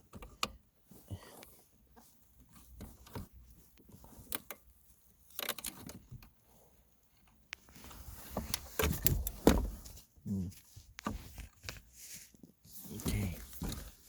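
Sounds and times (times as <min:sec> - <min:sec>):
metal and plastic clicks and rattles: 0:02.5 - 0:06.4, 0:08.4 - 0:10.0.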